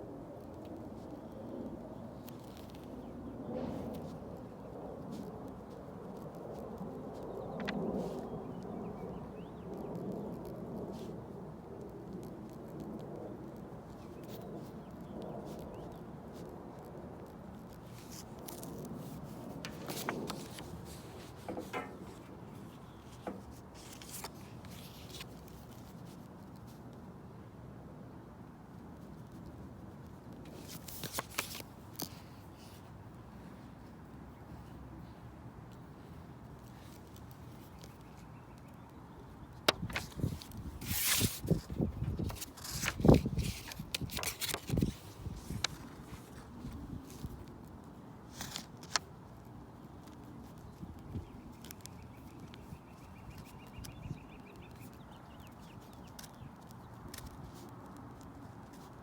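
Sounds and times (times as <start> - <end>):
faint outdoor background: 0.0 - 59.0
paper-like rustling: 17.8 - 26.3, 30.5 - 32.9, 39.6 - 47.5, 48.3 - 49.1
scraping: 19.4 - 24.3.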